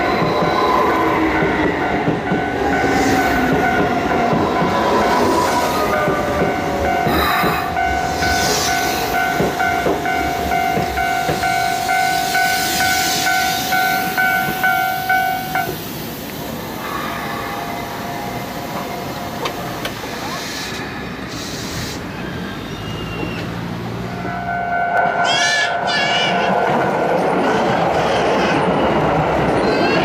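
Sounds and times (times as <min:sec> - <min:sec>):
level crossing warning bell: 0:00.0 - 0:15.8, 0:24.1 - 0:26.7
train wheels clacking on rail joints: 0:00.0 - 0:15.8.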